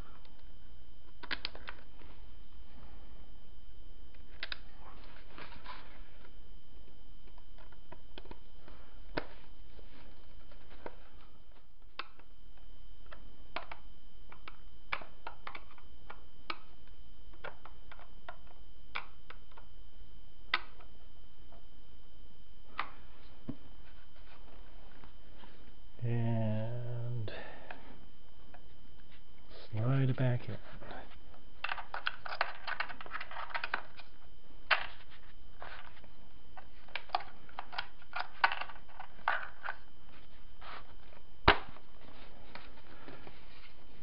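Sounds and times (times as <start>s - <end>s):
steady low hum: 0.0s - 44.0s.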